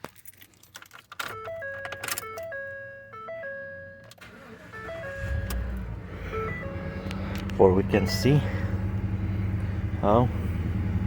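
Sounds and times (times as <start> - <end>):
electronic dashboard chime: 1.4 - 7.0, 7.8 - 8.5
engine starting and idling: 4.1 - 11.0.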